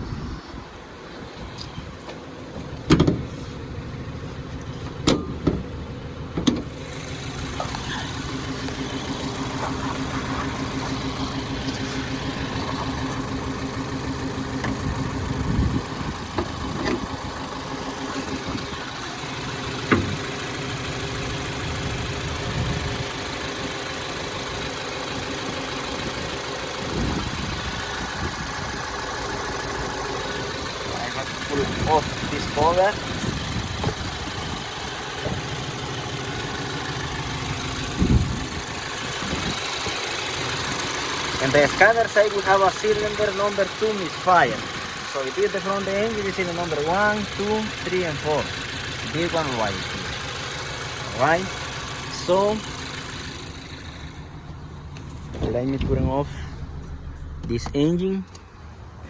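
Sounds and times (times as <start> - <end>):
car engine idling: 0.0 - 59.0
sharp knocks and clunks: 2.9 - 3.3, 4.8 - 5.7, 6.3 - 6.7, 19.8 - 20.2, 33.8 - 34.1, 35.2 - 35.5, 54.4 - 58.4.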